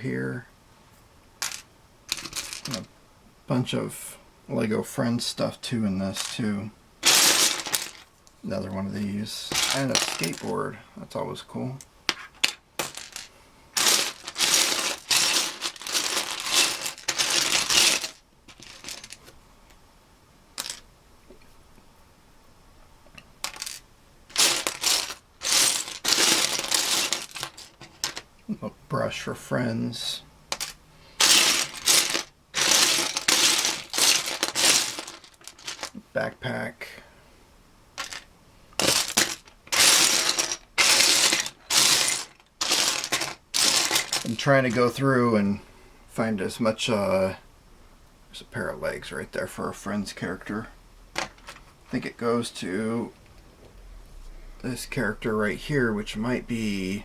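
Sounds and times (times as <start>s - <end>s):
plastic bricks clattering: 1.4s - 2.9s, 7.0s - 8.1s, 9.5s - 10.5s, 12.4s - 19.2s, 23.4s - 28.2s, 30.5s - 36.0s, 38.0s - 45.0s.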